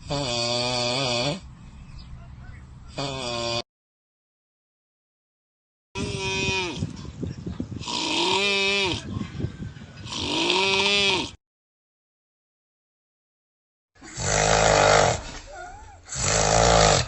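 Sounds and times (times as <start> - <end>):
exaggerated voiced snoring: 0.0 - 1.5, 2.9 - 3.7, 7.8 - 9.1, 10.0 - 11.4, 14.0 - 17.0.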